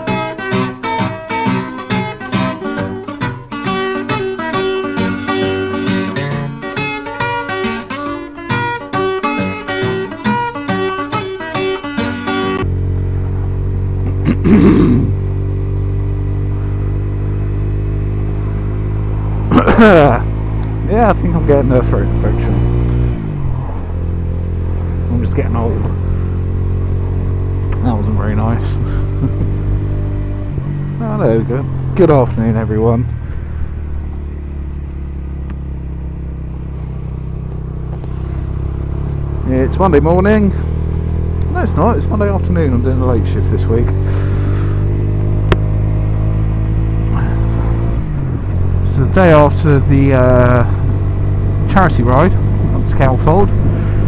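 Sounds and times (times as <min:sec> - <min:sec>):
motorcycle engine running: 0:09.0 - 0:54.0
person coughing: 0:14.1 - 0:15.2, 0:19.5 - 0:20.0.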